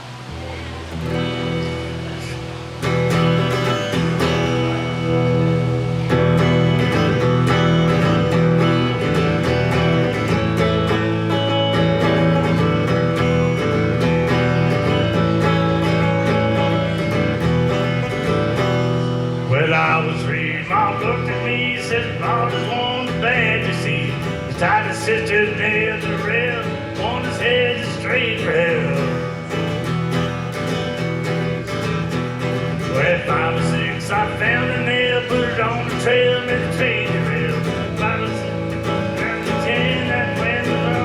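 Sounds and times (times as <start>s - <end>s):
live country band with guitars: 0.0s - 41.0s
person singing: 19.4s - 29.8s, 32.6s - 41.0s.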